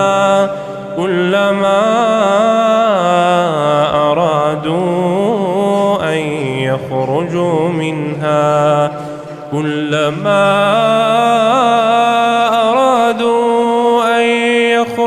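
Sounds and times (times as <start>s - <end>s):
man chanting: 0.0s - 15.0s
short breath: 0.5s - 0.9s, 8.9s - 9.5s.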